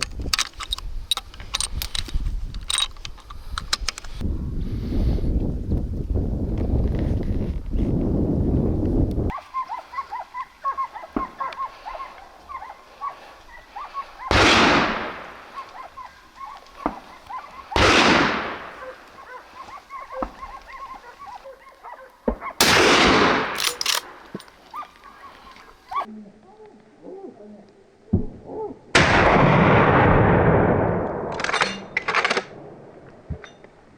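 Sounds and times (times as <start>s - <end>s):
rifle shots echoing: 14.3s - 15.8s, 17.7s - 19.1s, 22.6s - 24.4s, 29.0s - 32.8s.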